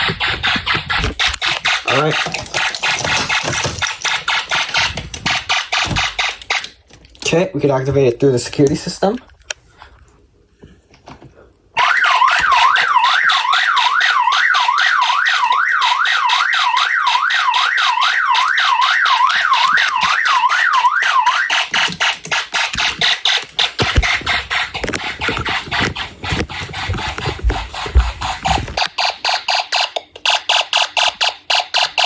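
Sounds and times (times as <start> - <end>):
warbling electronic siren tone: 11.8 - 22.6.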